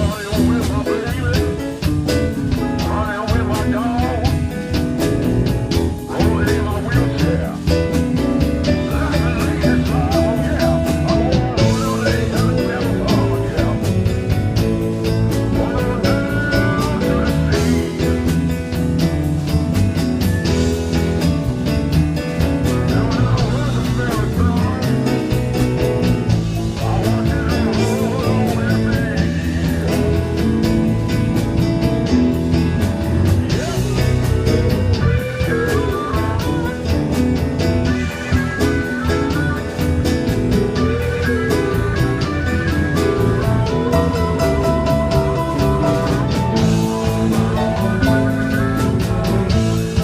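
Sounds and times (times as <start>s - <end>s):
electric guitar bent notes: 0.0s - 50.0s
live blues band: 0.0s - 50.0s.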